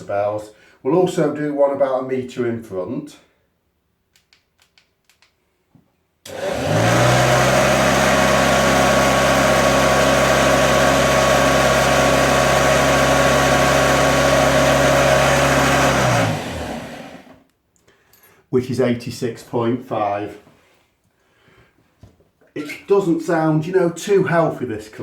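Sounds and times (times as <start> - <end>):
vacuum cleaner running: 6.3 - 17.4.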